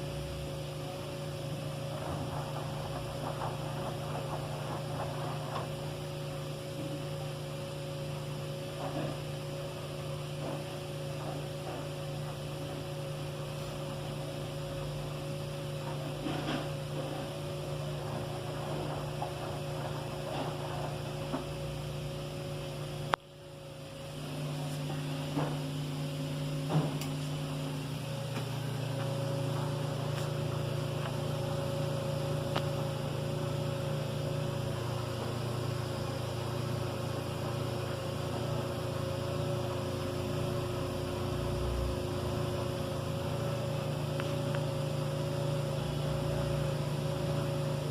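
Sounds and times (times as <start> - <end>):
washing machine motor hum: 0.0 - 47.9.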